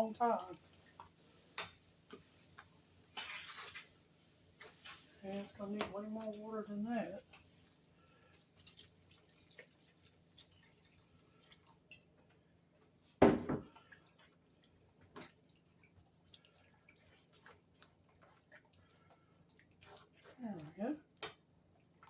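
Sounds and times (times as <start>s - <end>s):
water dripping and splashing: 8.3s - 12.9s, 13.7s - 22.0s.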